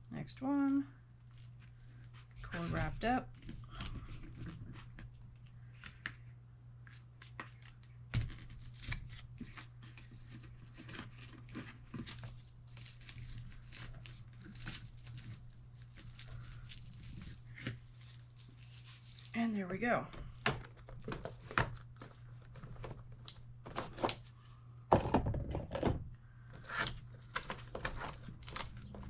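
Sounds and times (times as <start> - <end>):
hook-and-loop strap ripping: 26.6 - 29.0.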